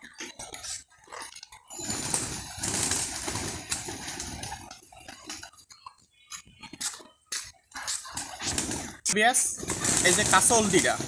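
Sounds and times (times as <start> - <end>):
pigeon wings flapping: 1.8 - 5.5, 7.8 - 9.0, 9.6 - 11.0.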